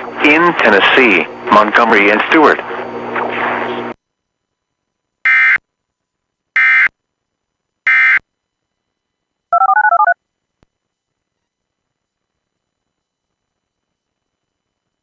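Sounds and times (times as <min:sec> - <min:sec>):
touch-tone beeps: 0:09.6 - 0:10.2.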